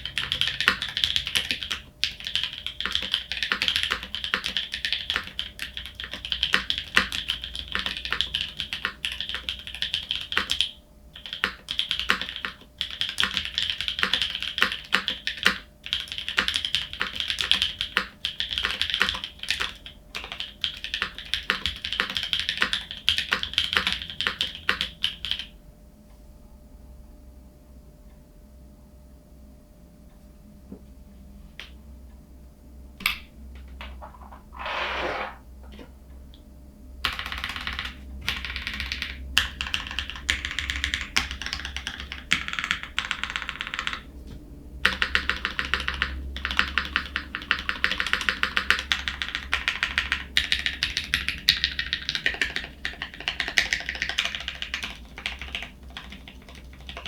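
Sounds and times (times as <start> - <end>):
mechanical keyboard typing: 0.0 - 25.5, 37.0 - 44.1, 44.8 - 57.0.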